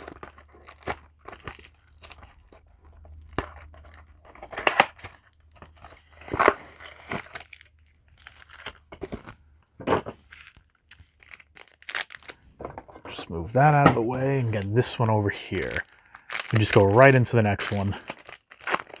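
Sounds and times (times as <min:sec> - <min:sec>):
foil wrappers crinkling: 0:00.0 - 0:19.0.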